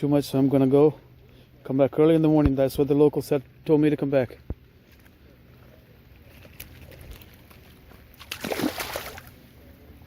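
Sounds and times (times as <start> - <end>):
water splash: 8.1 - 9.4.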